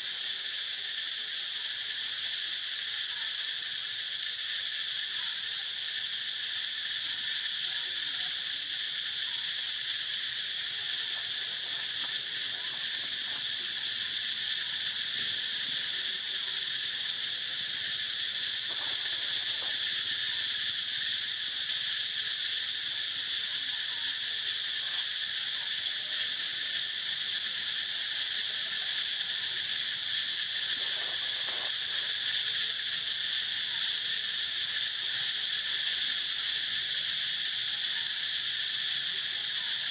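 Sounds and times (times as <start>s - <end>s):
insect chorus drone: 0.0s - 39.9s.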